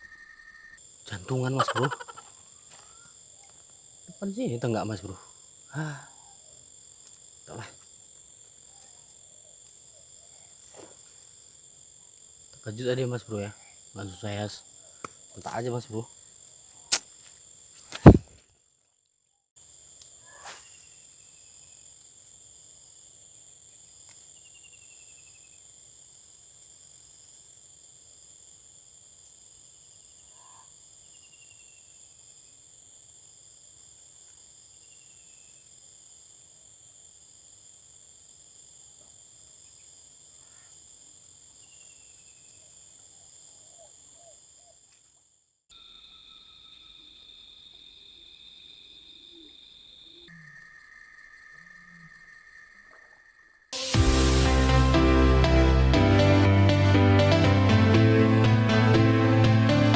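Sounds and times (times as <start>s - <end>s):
insects chirring: 0.0s - 54.5s
loud sharp knock: 18.0s - 18.3s.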